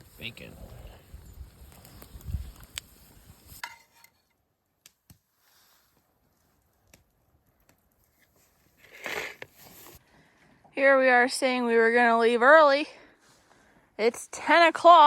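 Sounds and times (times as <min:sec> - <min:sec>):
short scraping rustle: 0:08.2 - 0:10.0.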